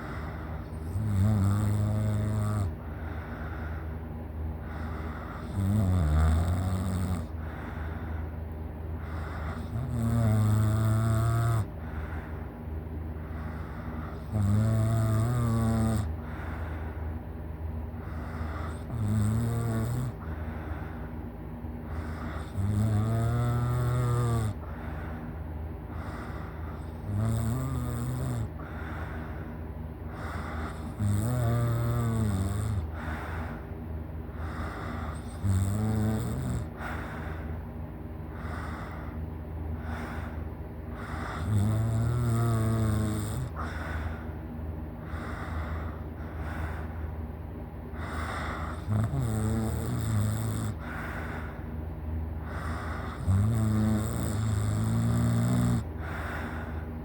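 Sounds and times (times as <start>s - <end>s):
person snoring loudly: 0.0s - 2.8s, 4.7s - 7.4s, 9.0s - 11.8s, 13.4s - 16.2s, 18.0s - 20.4s, 21.9s - 24.8s, 26.0s - 28.8s, 30.2s - 33.2s, 34.4s - 37.0s, 41.0s - 44.0s, 48.0s - 51.4s, 52.5s - 56.8s
soft breathing: 0.0s - 47.3s, 47.9s - 57.0s.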